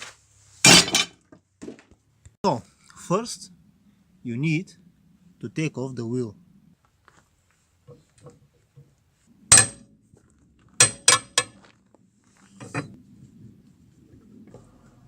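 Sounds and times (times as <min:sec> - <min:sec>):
steel tool clanking on metal: 0:09.5 - 0:09.8.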